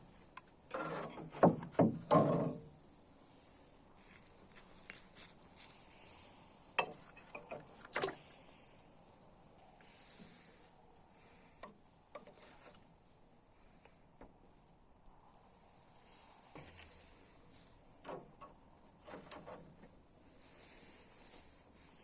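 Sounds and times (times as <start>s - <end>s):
faint steady hiss: 2.6s - 22.0s.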